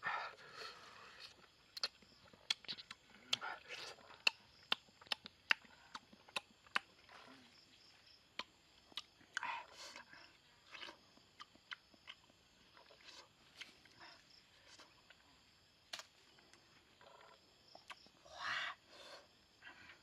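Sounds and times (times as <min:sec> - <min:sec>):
person chewing crunchy fruit: 0:00.8 - 0:15.4, 0:17.0 - 0:18.2.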